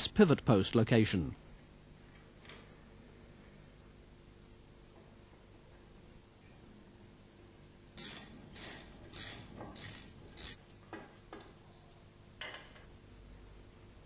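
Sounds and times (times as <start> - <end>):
ratchet spanner clicking: 8.0 - 10.6.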